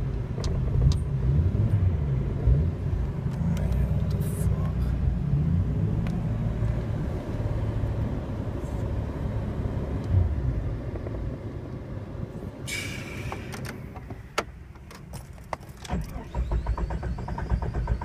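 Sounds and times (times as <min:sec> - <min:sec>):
car engine idling: 0:10.3 - 0:18.0
short hiss: 0:12.7 - 0:13.5.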